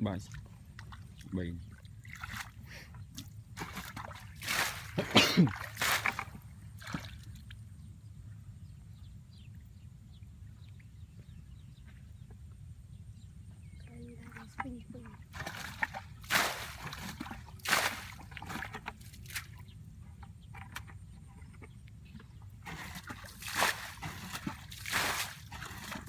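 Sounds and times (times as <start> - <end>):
water trickling and dripping: 0.0 - 6.2
shallow water splashing: 0.0 - 7.6, 14.1 - 19.7, 22.6 - 26.0.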